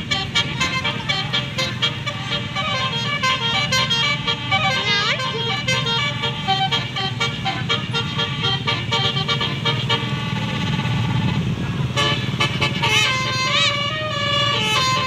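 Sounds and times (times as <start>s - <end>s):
musical air horn melody: 0.0s - 11.4s, 12.0s - 15.0s.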